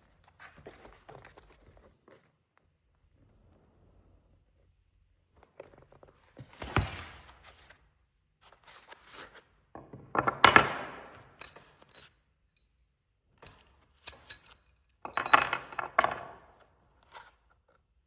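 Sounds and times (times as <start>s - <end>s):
small tools clinking: 14.0s - 16.3s.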